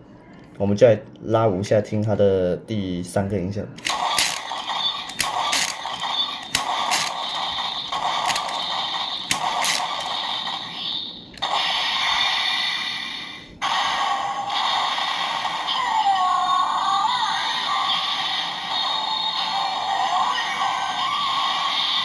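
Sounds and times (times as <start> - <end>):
toy sword electronic sound effects: 3.8 - 12.8.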